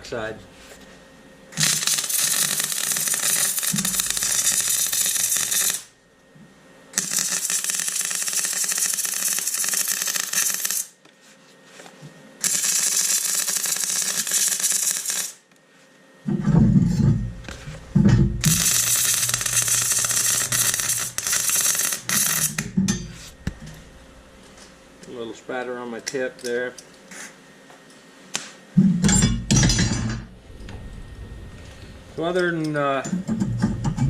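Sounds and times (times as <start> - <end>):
welder crackling: 1.6 - 5.9, 7.0 - 11.0, 12.4 - 15.4, 17.4 - 24.0.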